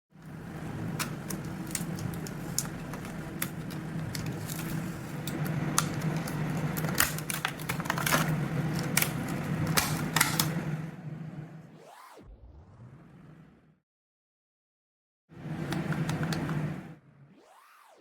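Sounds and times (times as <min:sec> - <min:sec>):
packaging clicks and taps: 0:00.2 - 0:10.6.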